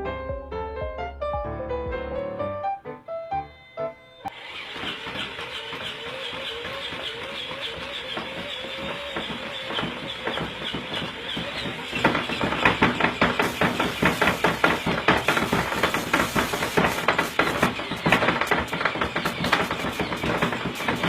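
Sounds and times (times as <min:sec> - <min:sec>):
mechanical arm patting: 0:04.3 - 0:21.0.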